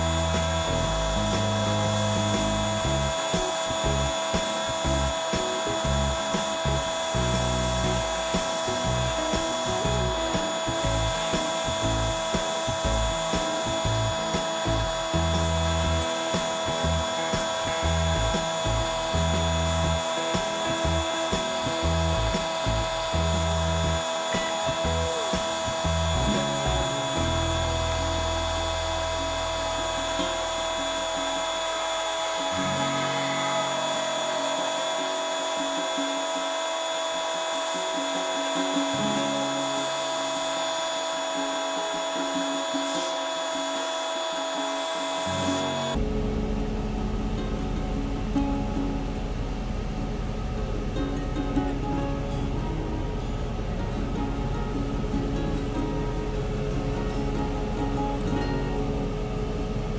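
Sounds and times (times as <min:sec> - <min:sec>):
power sander whining: 0:00.0 - 0:46.0.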